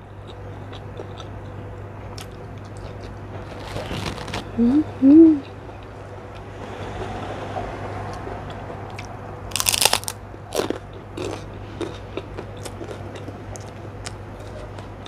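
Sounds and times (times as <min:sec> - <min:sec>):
cracker crunching: 0:00.2 - 0:04.6, 0:08.9 - 0:14.9
person chewing crunchily: 0:00.2 - 0:04.8, 0:08.9 - 0:15.0.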